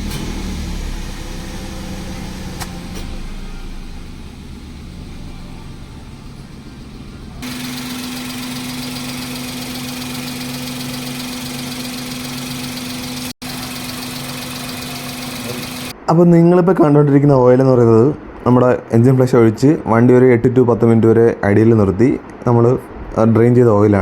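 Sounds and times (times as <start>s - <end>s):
car engine idling: 0.0s - 16.0s
steady hum: 0.0s - 16.1s.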